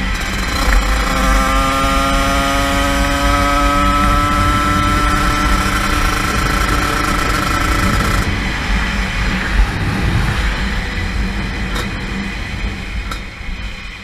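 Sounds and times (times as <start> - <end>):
small engine at high revs: 0.0 - 8.4
low rumble: 0.0 - 14.0.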